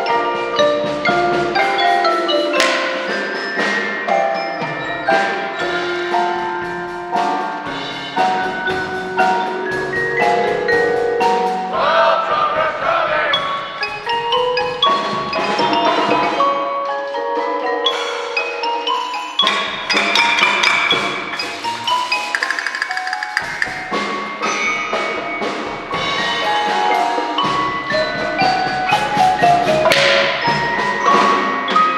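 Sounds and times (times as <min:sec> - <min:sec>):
mallet percussion playing a tune: 0:00.0 - 0:11.7, 0:13.8 - 0:31.9
wood block clicks: 0:19.4 - 0:21.1, 0:21.9 - 0:24.0.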